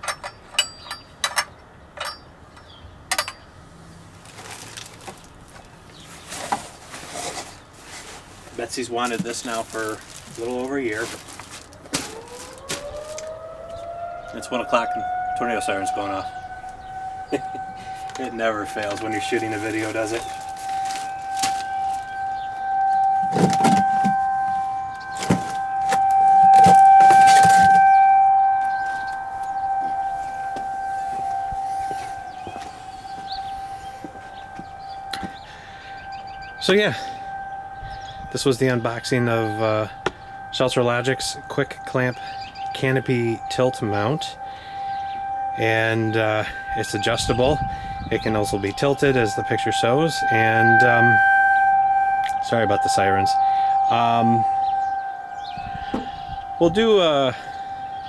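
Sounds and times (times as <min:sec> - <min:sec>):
tornado warning siren: 0:03.1 - 0:58.0
rustling: 0:04.0 - 0:15.2, 0:15.8 - 0:43.0
soft knocks: 0:23.0 - 0:28.0, 0:55.6 - 0:56.4.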